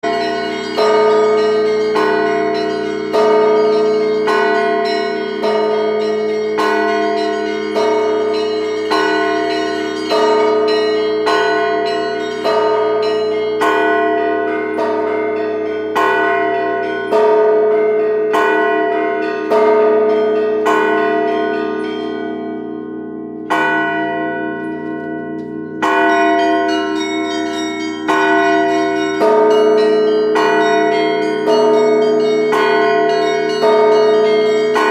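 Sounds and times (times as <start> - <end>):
sustained bell hum: 0.0 - 17.6, 19.5 - 34.9
church bell main strokes: 0.0 - 34.9
lighter higher bells: 23.5 - 34.9.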